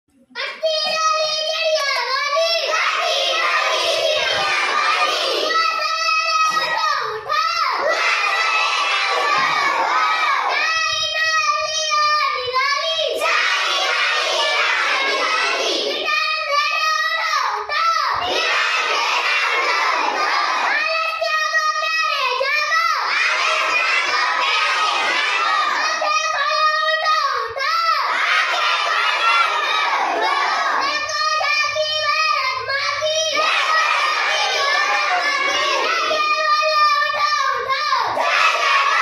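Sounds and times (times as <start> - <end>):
children chanting a rhyme: 0.4 - 39.0
children singing: 1.9 - 11.0, 12.8 - 16.2, 18.1 - 20.8, 23.0 - 26.1, 28.1 - 39.0.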